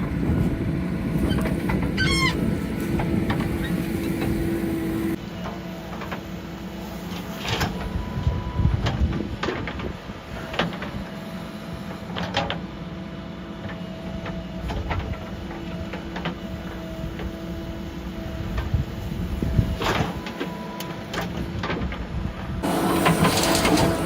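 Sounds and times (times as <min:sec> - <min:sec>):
diesel engine running: 0:00.0 - 0:07.4, 0:22.6 - 0:24.0.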